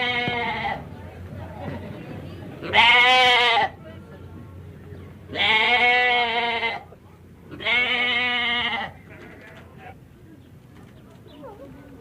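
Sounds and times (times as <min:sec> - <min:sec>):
sheep bleating: 0:02.6 - 0:03.8, 0:05.3 - 0:06.9, 0:07.5 - 0:09.6.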